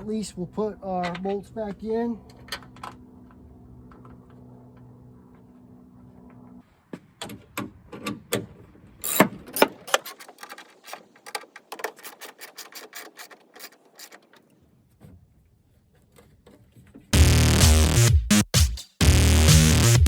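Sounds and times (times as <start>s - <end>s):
music with a beat: 17.2s - 20.0s.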